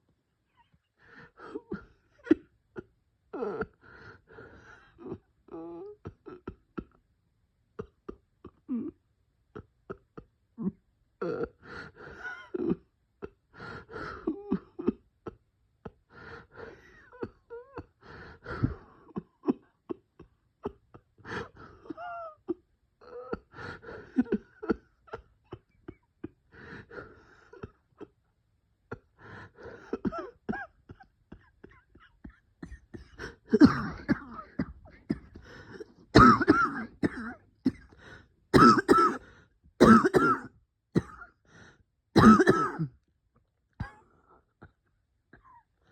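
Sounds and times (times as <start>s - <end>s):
wheezing gasping breaths: 3.4s - 5.2s, 16.1s - 19.2s, 23.4s - 24.4s, 26.5s - 27.8s, 31.7s - 36.0s, 37.8s - 38.3s, 41.4s - 41.8s
person coughing: 30.0s - 41.3s, 42.2s - 43.0s.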